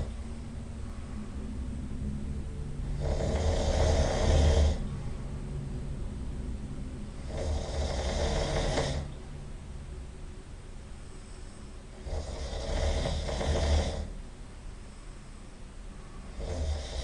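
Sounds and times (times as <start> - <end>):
low breathing: 0.0 - 6.2
loud snoring: 2.8 - 4.8, 7.2 - 9.1, 11.9 - 14.2, 16.3 - 17.0.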